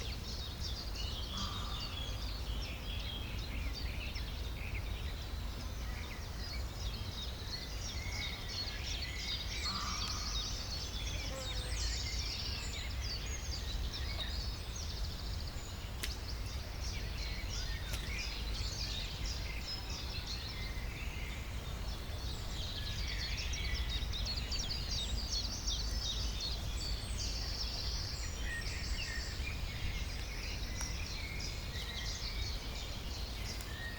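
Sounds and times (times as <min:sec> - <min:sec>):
small birds chirping and trilling: 0:00.0 - 0:33.9.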